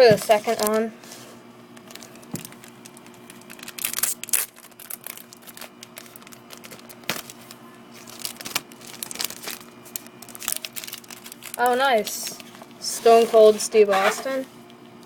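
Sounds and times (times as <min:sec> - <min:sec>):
wrapper crinkling and tearing: 0:01.7 - 0:12.7.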